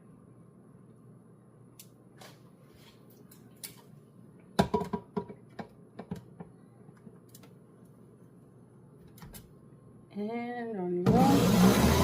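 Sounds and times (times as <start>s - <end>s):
kitchen items knocking on counter: 4.6s - 5.4s.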